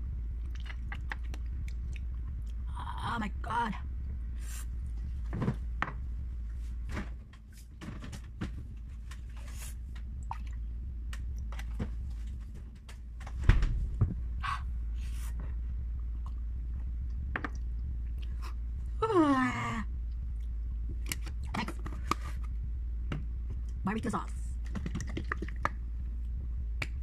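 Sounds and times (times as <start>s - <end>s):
steady low hum: 0.0s - 27.0s
person chewing: 0.4s - 2.6s.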